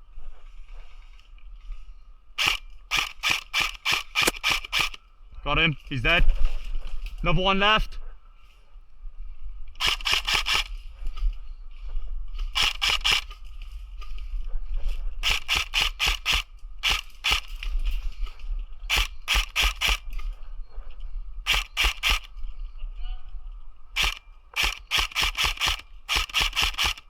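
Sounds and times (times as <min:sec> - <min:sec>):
airsoft gun firing single shots: 0:02.4 - 0:05.0, 0:09.8 - 0:10.7, 0:12.6 - 0:13.3, 0:15.2 - 0:17.6, 0:18.9 - 0:20.1, 0:21.5 - 0:22.3, 0:24.0 - 0:27.0.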